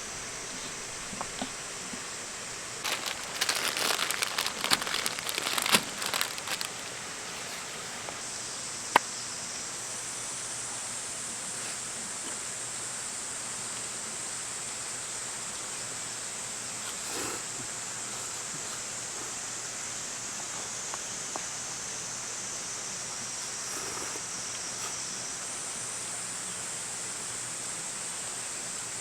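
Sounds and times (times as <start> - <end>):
steady high hiss: 0.0 - 29.0
rustling and crinkling clicks: 2.8 - 8.2.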